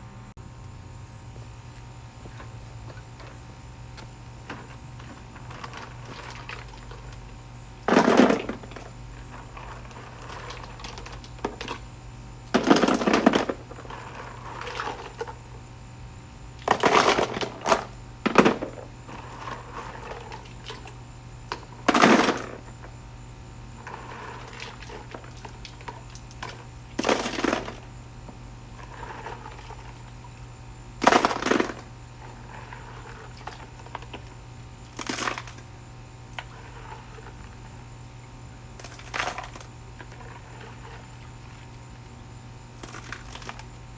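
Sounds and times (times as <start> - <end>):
steady low hum: 0.0 - 43.9
rustles and clatters of parts: 2.2 - 7.3, 24.4 - 27.8.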